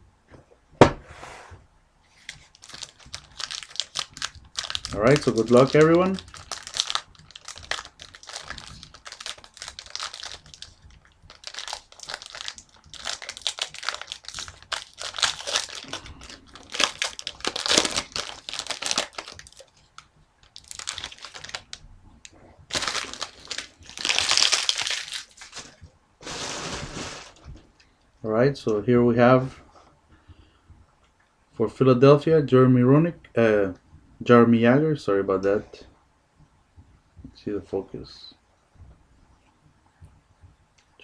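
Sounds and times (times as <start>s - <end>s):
cards rustling: 2.2s - 21.8s, 22.7s - 27.4s
wrapper tearing and crinkling: 2.2s - 21.8s, 22.7s - 27.4s.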